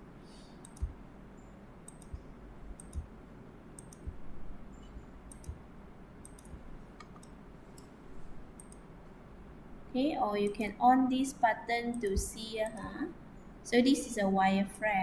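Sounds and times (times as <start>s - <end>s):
faint room hiss: 0.0s - 15.0s
mouse and keyboard clicking: 0.6s - 1.0s, 1.9s - 3.1s, 3.8s - 5.6s, 6.2s - 7.9s, 8.6s - 8.9s, 10.4s - 10.8s, 11.9s - 13.0s.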